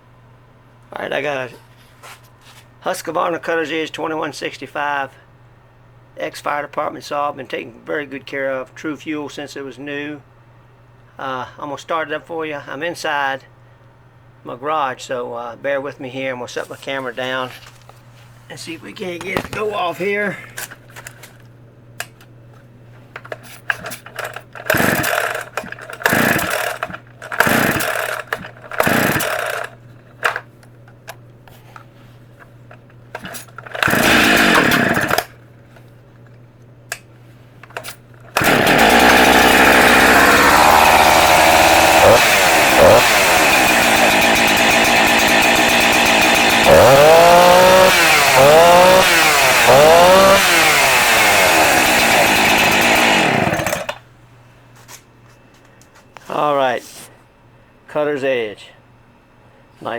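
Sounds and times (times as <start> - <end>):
chainsaw starter cord tugs: 23.7 - 29.8, 33.2 - 35.3, 38.3 - 54.0
chainsaw engine running: 24.6 - 29.7, 33.7 - 35.3, 38.4 - 54.0
chainsaw revving: 24.6 - 29.7, 33.8 - 35.3, 38.4 - 54.0.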